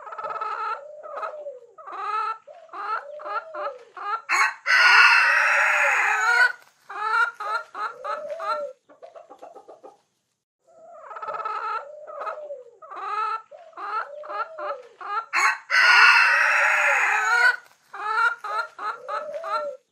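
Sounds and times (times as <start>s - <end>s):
hens clucking: 0.0s - 19.9s
rooster crowing: 4.3s - 6.6s, 15.3s - 17.6s.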